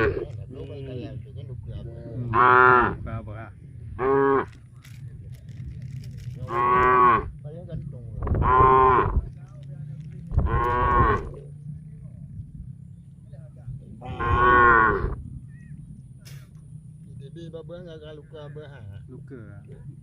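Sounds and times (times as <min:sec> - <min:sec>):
cattle mooing: 0:00.0 - 0:00.3, 0:02.0 - 0:03.2, 0:04.0 - 0:04.6, 0:06.4 - 0:07.3, 0:08.4 - 0:09.2, 0:10.4 - 0:11.4, 0:14.0 - 0:15.2
low hum: 0:00.0 - 0:20.0.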